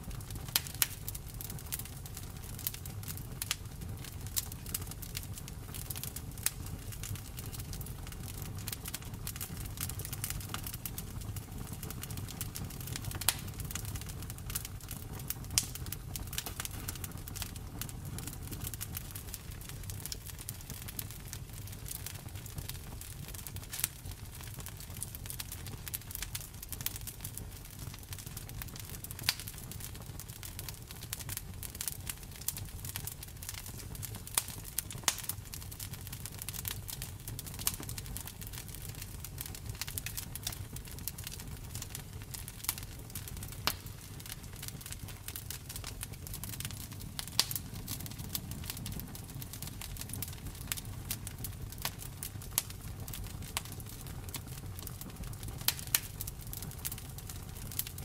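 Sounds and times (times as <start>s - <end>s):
low rumble of flames: 0.0s - 58.0s
wood crackling and popping: 0.0s - 58.0s.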